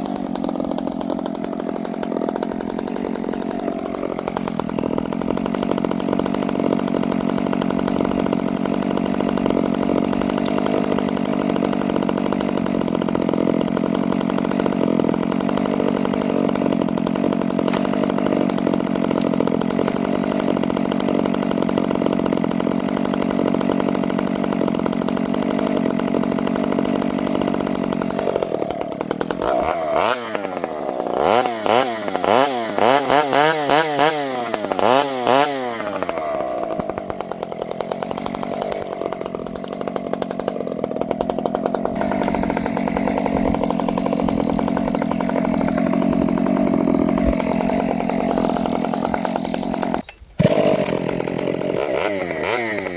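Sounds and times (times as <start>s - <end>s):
chainsaw cutting at high revs: 0.0s - 52.9s.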